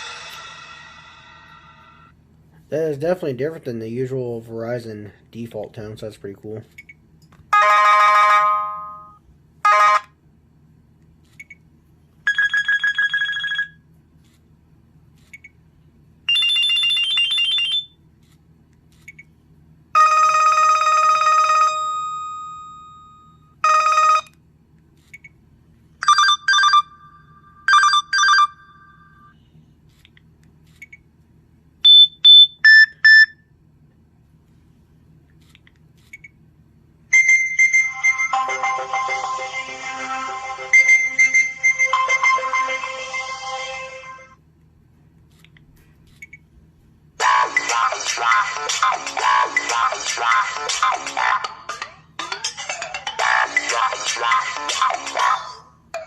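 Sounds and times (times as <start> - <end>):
phone ringtone melodies: 7.6 - 10.1, 12.3 - 13.8, 20.0 - 24.3, 26.0 - 29.3, 37.1 - 44.3
quick beeps: 31.9 - 33.4.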